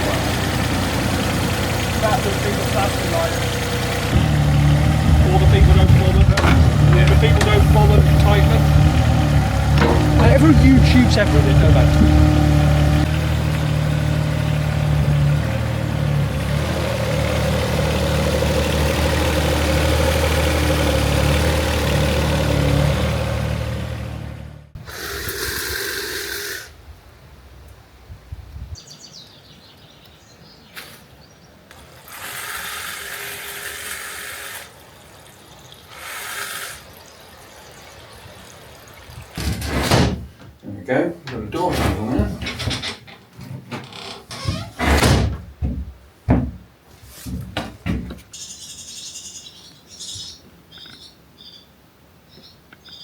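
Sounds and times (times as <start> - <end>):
engine idling: 0.0 - 24.8
hissing spray bursts: 24.9 - 26.7, 35.9 - 36.9.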